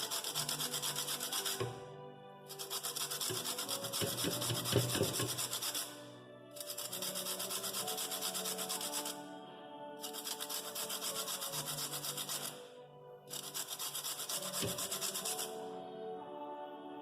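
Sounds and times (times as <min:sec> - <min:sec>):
lemon peel grated on grater: 0:00.0 - 0:01.7, 0:02.5 - 0:05.9, 0:06.6 - 0:09.1, 0:10.0 - 0:12.6, 0:13.3 - 0:15.5
background music: 0:00.0 - 0:17.0.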